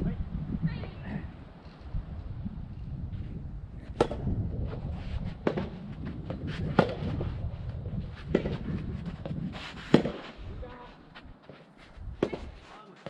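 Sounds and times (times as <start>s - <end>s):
wind buffeting microphone: 0.0s - 12.7s
rackets hitting tennis ball: 3.9s - 4.3s, 5.4s - 7.2s, 8.2s - 10.4s, 12.2s - 13.0s.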